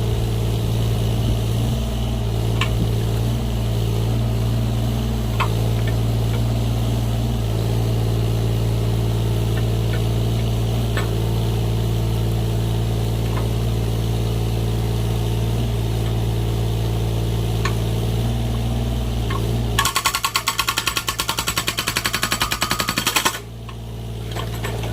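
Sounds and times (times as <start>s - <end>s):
diesel engine running: 0.0s - 24.9s.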